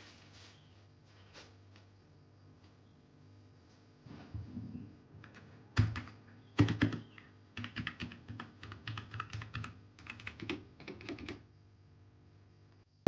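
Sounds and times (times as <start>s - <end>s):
mechanical keyboard typing: 5.2s - 11.4s.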